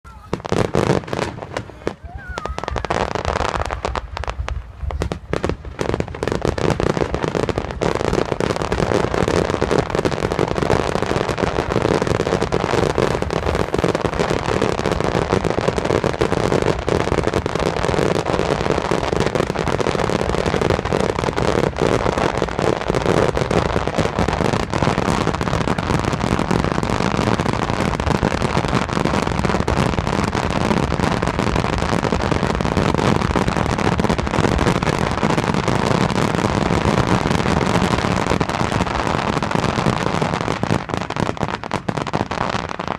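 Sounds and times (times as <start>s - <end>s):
fireworks bursting and crackling: 0.0s - 42.9s.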